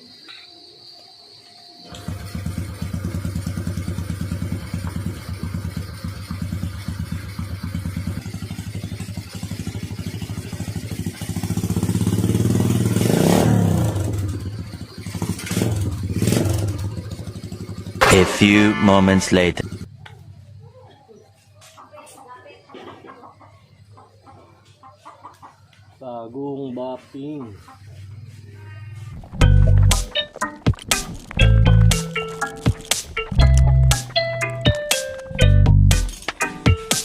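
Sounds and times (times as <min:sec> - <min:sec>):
motorcycle engine idling and revving: 0:01.9 - 0:21.6, 0:27.5 - 0:37.0.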